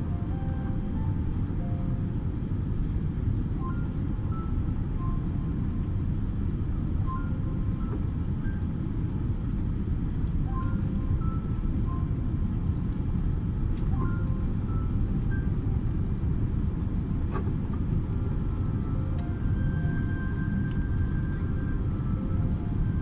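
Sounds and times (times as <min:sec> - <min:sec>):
airliner cabin rumble: 0:00.0 - 0:23.0.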